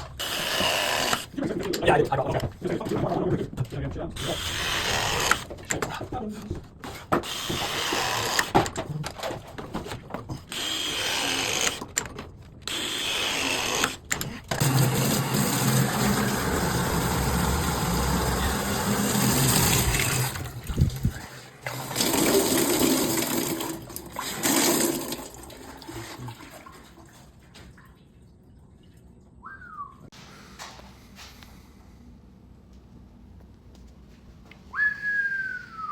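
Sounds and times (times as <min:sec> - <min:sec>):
tap water running into sink: 0:14.6 - 0:28.0.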